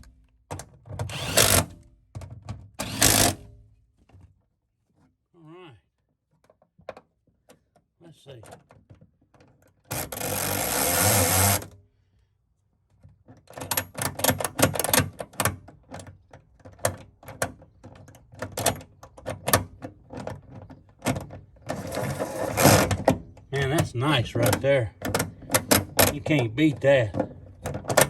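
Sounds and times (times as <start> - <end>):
impact wrench driving bolt: 1.0 - 1.7, 2.8 - 3.5.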